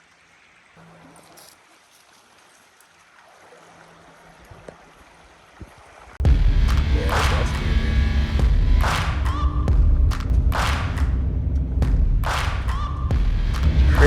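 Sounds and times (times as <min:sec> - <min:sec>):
loud music with heavy bass: 0:06.2 - 0:14.0.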